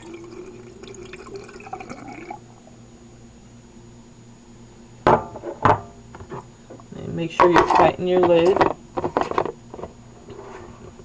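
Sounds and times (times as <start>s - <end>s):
water pouring into tank: 0.0s - 2.4s.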